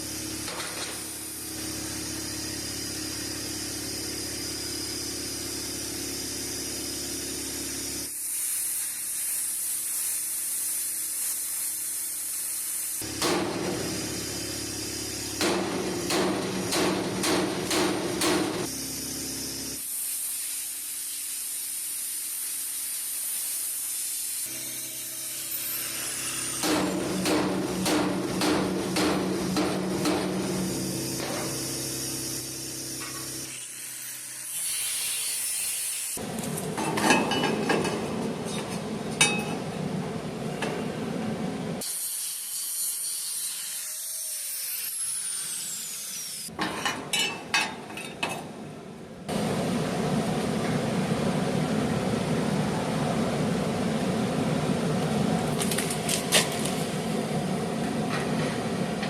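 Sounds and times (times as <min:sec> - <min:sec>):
power tool motor cutting: 0:24.4 - 0:36.2, 0:41.8 - 0:46.5.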